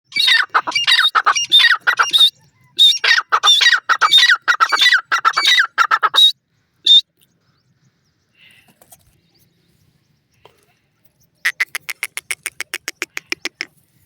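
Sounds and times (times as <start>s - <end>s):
francolin calling: 0.1s - 6.3s, 6.9s - 7.1s.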